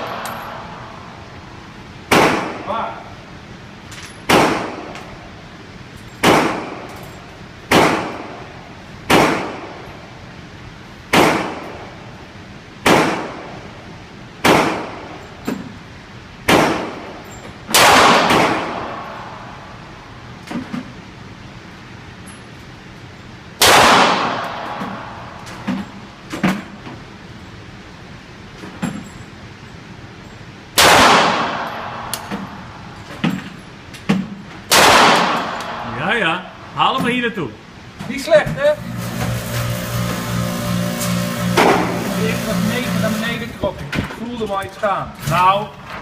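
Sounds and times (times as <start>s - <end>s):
gunshots with ringing echo: 6.2s - 6.8s, 17.7s - 19.3s, 23.6s - 25.2s, 30.8s - 32.1s, 34.7s - 35.8s.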